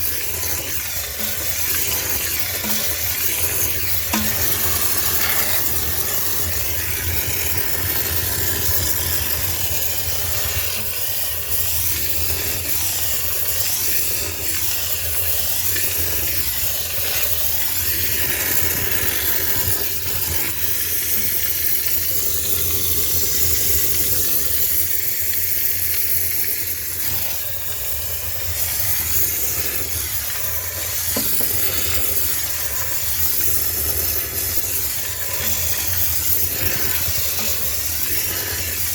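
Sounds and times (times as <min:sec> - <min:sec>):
steam cleaner hissing: 0:00.0 - 0:38.9.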